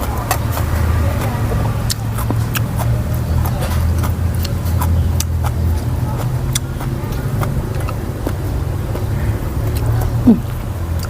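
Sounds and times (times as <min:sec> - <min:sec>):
chewing and mouth clicks: 0:00.0 - 0:11.0
steady low rumble: 0:00.0 - 0:11.0.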